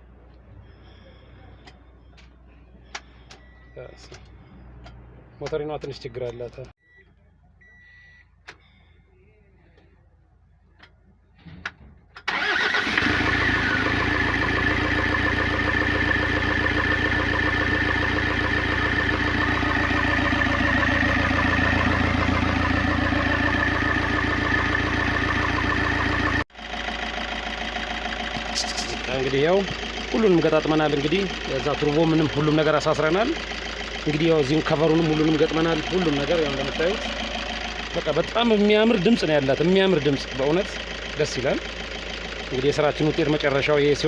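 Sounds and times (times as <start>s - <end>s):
diesel engine idling: 12.2s - 44.0s.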